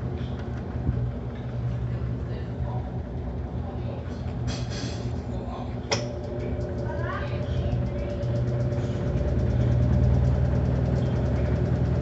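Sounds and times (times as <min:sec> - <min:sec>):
washing machine motor humming: 0:05.1 - 0:12.0.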